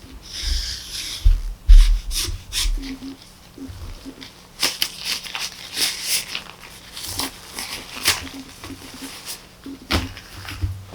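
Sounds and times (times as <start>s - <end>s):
faint steady hum: 0.0s - 10.9s
plate polished with rubbing strokes: 0.3s - 3.1s.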